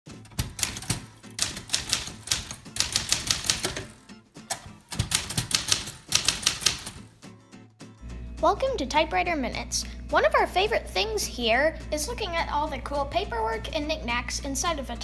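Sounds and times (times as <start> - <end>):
typewriter keys clicking: 0.3 - 7.1.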